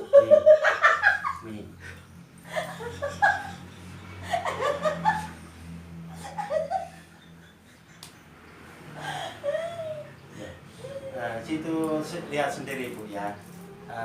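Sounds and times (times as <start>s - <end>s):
person laughing: 0.0s - 1.5s.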